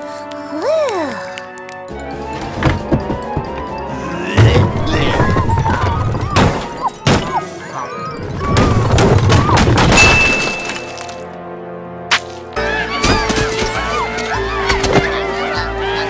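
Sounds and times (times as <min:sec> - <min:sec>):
cartoon background music: 0:00.0 - 0:16.0
thuds and crashes: 0:08.4 - 0:10.9.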